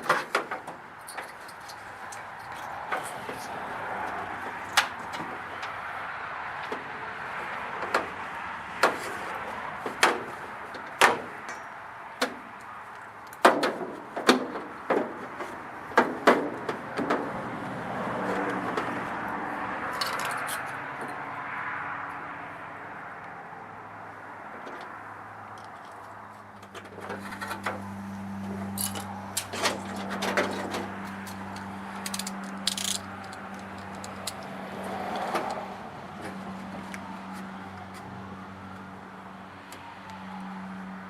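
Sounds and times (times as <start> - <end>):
tools clicking and knocking: 0.0 - 3.5, 20.0 - 20.8, 28.8 - 35.6.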